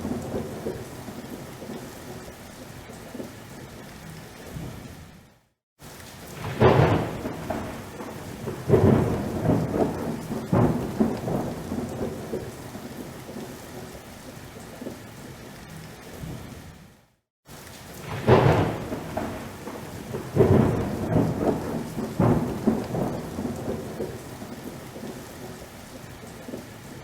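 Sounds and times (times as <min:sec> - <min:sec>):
thunderclap: 0:00.0 - 0:01.2, 0:06.3 - 0:12.6, 0:18.0 - 0:25.1
rolling thunder rumbles: 0:00.0 - 0:02.3, 0:06.3 - 0:13.9, 0:18.0 - 0:25.7
steady rain: 0:00.0 - 0:27.0.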